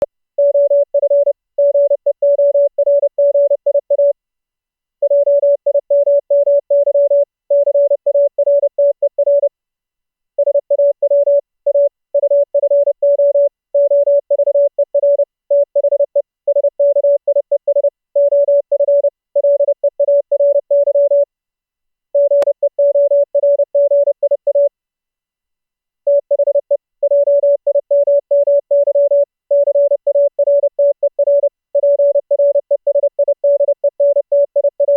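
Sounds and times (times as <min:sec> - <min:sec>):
morse code tone: 0:22.2 - 0:24.7, 0:26.1 - 0:34.9.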